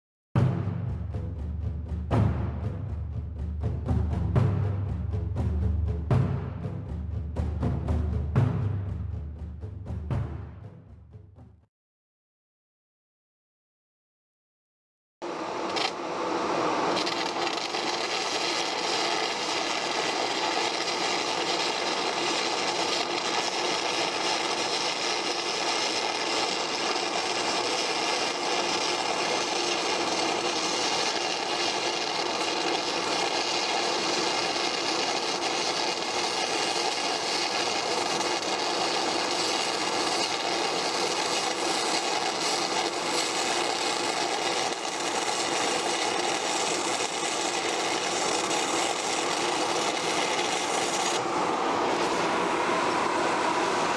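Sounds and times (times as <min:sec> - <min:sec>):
welding arc crackling: 0:15.2 - 0:53.0.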